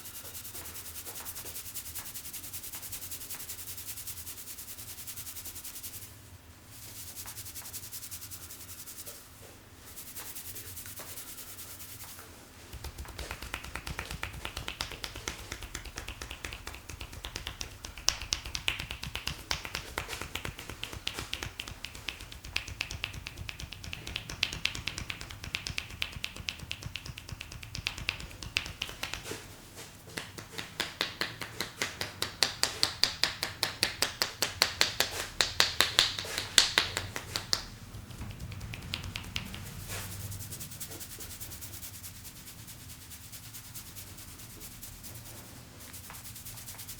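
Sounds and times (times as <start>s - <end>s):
hands rubbing hair and scalp: 0.0s - 6.1s, 6.7s - 46.9s
hands tapping on head: 12.0s - 29.4s, 30.0s - 40.3s.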